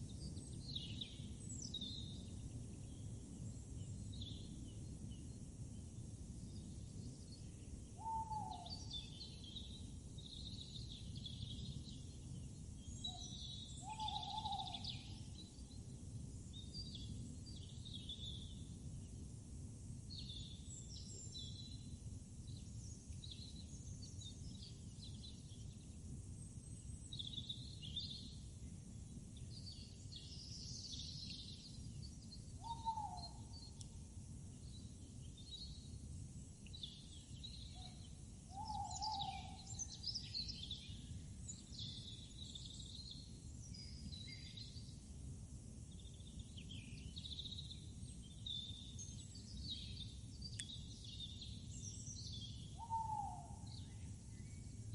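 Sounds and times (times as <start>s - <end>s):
lower falling bird calls: 7.0s - 15.8s, 26.5s - 34.0s, 34.6s - 45.0s, 45.9s - 54.8s.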